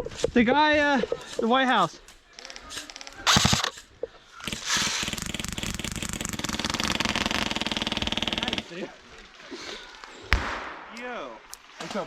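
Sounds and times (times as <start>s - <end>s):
airsoft gun firing full auto: 3.3s - 3.8s, 4.4s - 8.7s.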